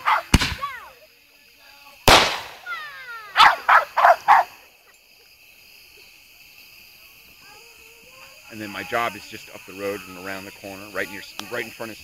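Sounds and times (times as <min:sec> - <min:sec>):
dog barking: 0:00.0 - 0:00.3, 0:03.4 - 0:04.6
firework bang: 0:00.3 - 0:00.7, 0:02.1 - 0:03.5.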